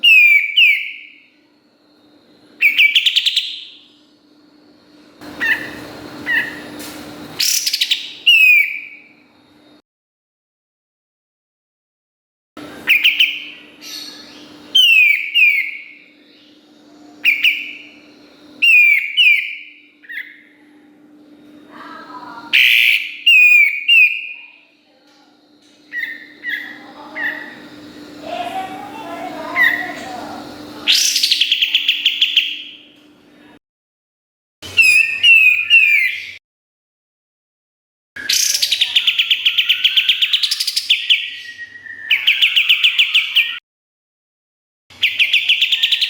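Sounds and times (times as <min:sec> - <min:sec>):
songbird whistling calls: 0:00.0 - 0:01.3, 0:02.6 - 0:04.0, 0:05.2 - 0:06.8, 0:07.4 - 0:09.2, 0:12.6 - 0:20.6, 0:22.5 - 0:24.6, 0:25.8 - 0:28.4, 0:30.8 - 0:33.0, 0:34.7 - 0:36.4, 0:38.2 - 0:43.6, 0:45.0 - 0:46.0
faint steady hum: 0:00.0 - 0:09.8, 0:12.6 - 0:33.6
songbird rapid trill: 0:25.9 - 0:30.0
falling whistled bird notes: 0:38.2 - 0:43.6.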